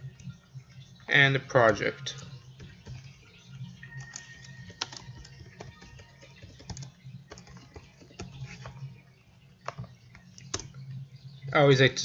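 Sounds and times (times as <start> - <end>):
keyboard typing clicks: 3.9 - 8.4, 9.7 - 10.8.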